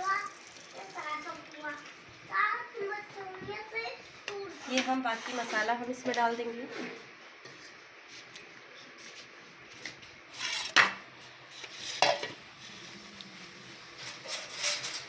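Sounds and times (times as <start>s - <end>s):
dishes clattering knocks: 12.0s - 12.4s.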